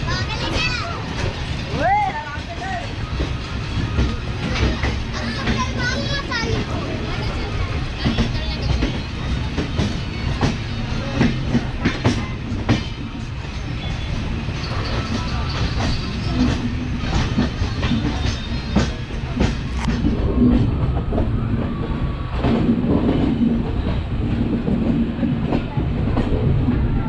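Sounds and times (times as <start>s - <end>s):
wheels clicking over rail joints: 0.0s - 21.4s
train rumbling along track: 0.0s - 27.0s.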